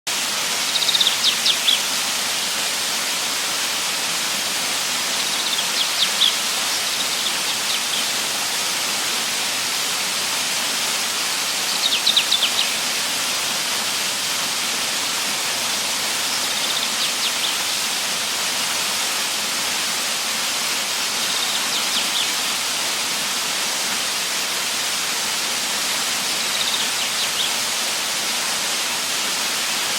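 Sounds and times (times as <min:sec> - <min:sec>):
flowing water rushing: 0:00.1 - 0:29.9
bird chirping: 0:00.6 - 0:01.9, 0:05.1 - 0:08.1, 0:11.7 - 0:12.8, 0:16.3 - 0:17.6, 0:21.4 - 0:22.3, 0:26.4 - 0:27.5.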